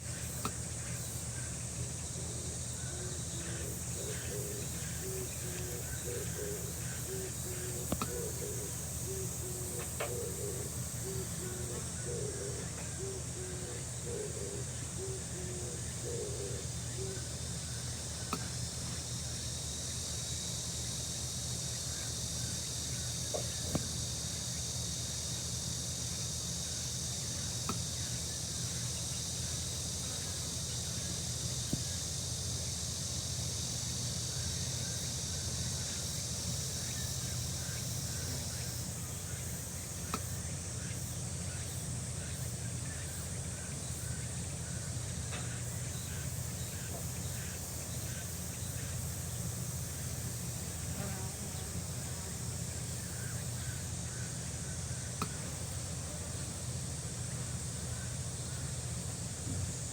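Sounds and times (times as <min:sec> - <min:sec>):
high-pitched insect drone: 0:00.0 - 0:59.9
low steady hum: 0:00.0 - 0:59.9
faint chirps: 0:00.1 - 0:19.0.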